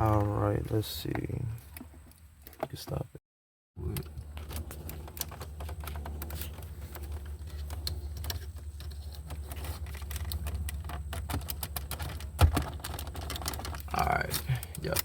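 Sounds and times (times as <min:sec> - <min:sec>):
steady low hum: 0:03.8 - 0:15.0.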